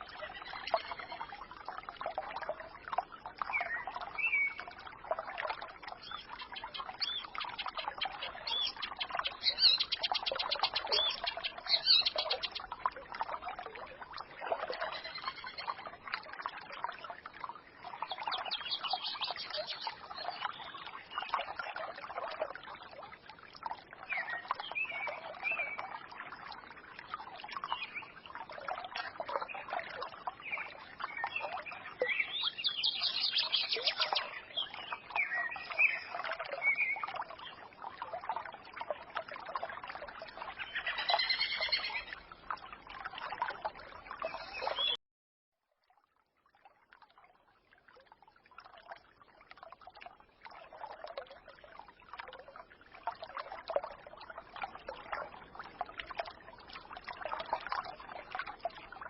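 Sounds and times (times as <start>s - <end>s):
songbirds chirping: 0.0s - 4.8s, 5.4s - 16.0s, 17.9s - 22.6s, 23.8s - 26.6s, 27.4s - 37.6s, 40.3s - 42.3s, 43.4s - 45.0s
stream trickling: 0.0s - 45.0s, 45.6s - 59.0s.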